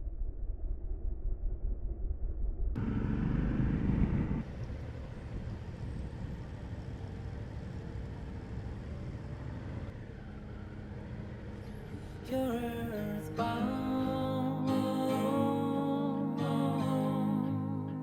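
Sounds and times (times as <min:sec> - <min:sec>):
motorcycle engine rumble: 0:02.7 - 0:12.9.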